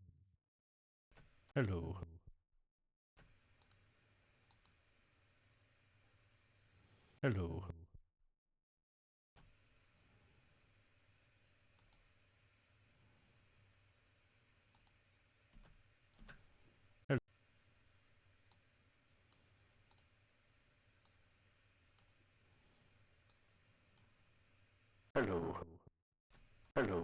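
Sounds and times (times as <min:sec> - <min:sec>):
computer mouse clicks: 0:03.2 - 0:04.8, 0:11.7 - 0:12.1, 0:14.7 - 0:15.0, 0:19.3 - 0:20.1, 0:21.0 - 0:21.2.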